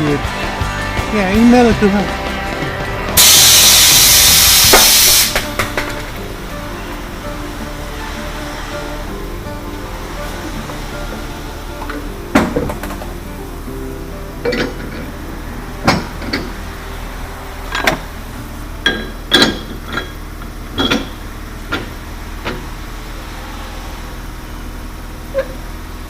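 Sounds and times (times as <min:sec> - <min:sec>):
low machine hum: 0:00.0 - 0:26.0
metal clanks and knocks: 0:05.3 - 0:06.4, 0:11.8 - 0:13.3, 0:14.4 - 0:16.7, 0:17.6 - 0:22.8.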